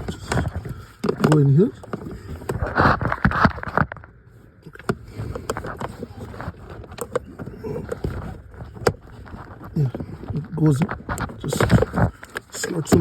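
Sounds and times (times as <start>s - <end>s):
plastic clicks and knocks: 0.0s - 4.1s
plastic filter scraping and rustling: 0.0s - 13.0s.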